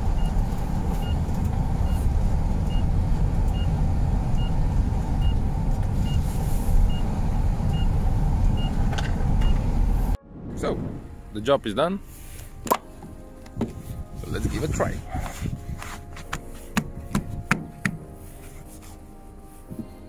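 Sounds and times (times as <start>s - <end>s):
engine rumbling: 0.0s - 19.9s
reversing warning beeps: 5.2s - 5.4s, 6.0s - 7.1s, 7.7s - 8.0s, 8.6s - 8.8s.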